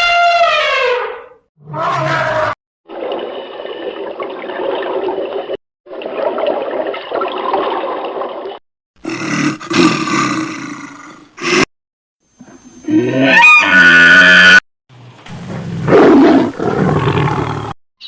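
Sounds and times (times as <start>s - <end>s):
different animal call: 0.0s - 2.6s, 12.8s - 14.6s
large animal roaring: 1.6s - 2.6s, 9.0s - 11.6s, 12.8s - 14.6s, 15.8s - 17.8s.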